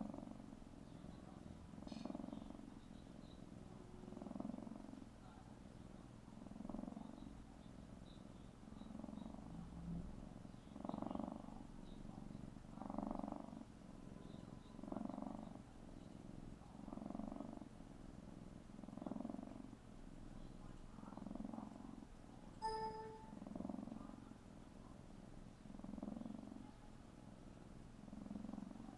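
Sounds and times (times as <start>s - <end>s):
kitten purring: 0.0s - 26.9s, 27.9s - 28.9s.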